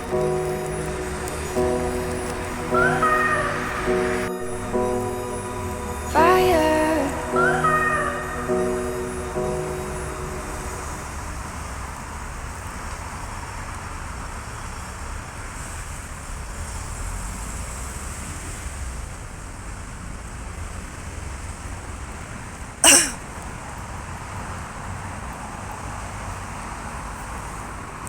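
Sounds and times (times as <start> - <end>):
distant traffic: 0.0 - 16.3
wind: 0.0 - 28.0.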